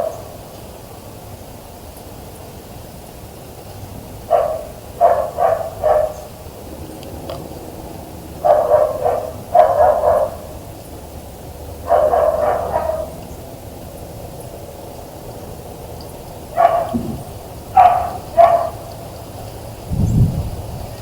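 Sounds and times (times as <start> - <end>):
dog barking: 0.0 - 0.4, 4.3 - 6.4, 8.4 - 10.6, 11.8 - 13.2, 16.5 - 19.0.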